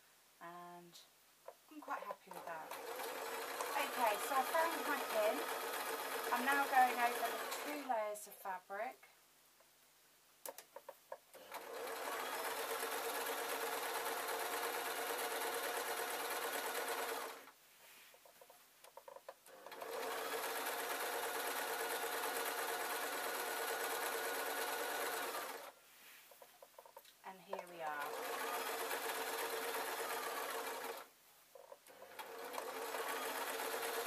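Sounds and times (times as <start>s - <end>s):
sewing machine stitching: 2.2s - 7.9s, 11.3s - 17.5s, 18.9s - 25.7s, 26.6s - 34.0s.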